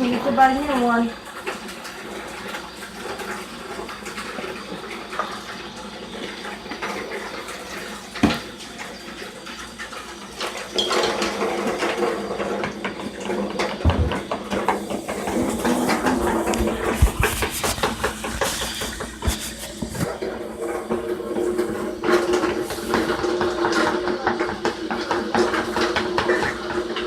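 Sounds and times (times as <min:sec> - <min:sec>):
water running and splashing: 0:00.0 - 0:27.0
dishes clicking and knocking: 0:12.6 - 0:21.0, 0:22.0 - 0:27.0.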